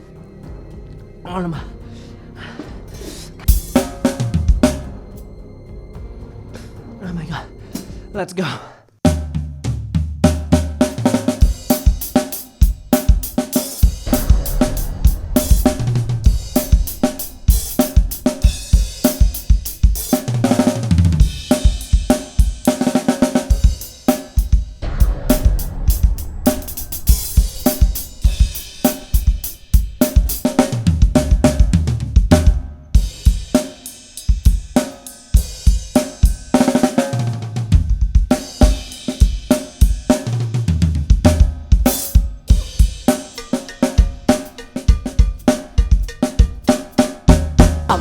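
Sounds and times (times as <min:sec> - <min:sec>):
bass line music: 0:00.0 - 0:08.2, 0:13.8 - 0:22.3, 0:24.6 - 0:33.2, 0:47.3 - 0:48.0
drum kit playing: 0:03.0 - 0:05.3, 0:09.0 - 0:48.0.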